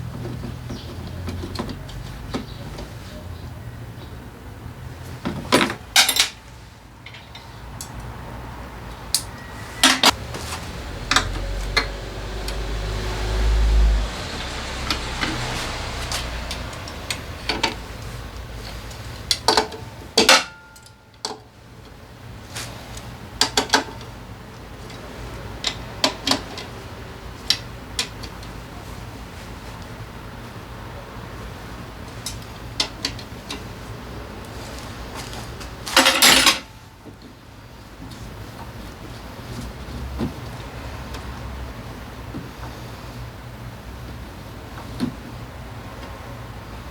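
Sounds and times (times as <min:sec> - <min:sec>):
low rumble: 0:10.1 - 0:19.0.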